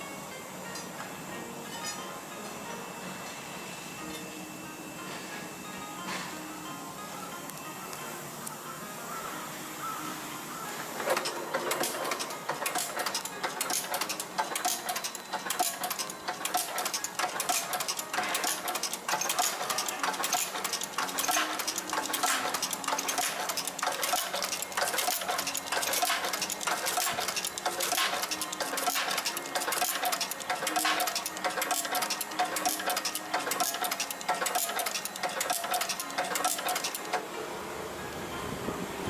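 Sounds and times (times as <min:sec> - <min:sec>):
wrapping machine rapid clicking: 0:11.0 - 0:37.2.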